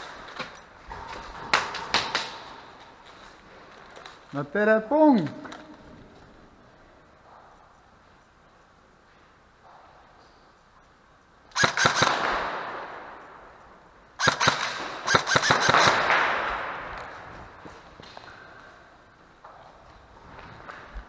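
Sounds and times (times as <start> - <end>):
airsoft gun bursts echoing: 11.5 - 13.6, 14.2 - 17.2.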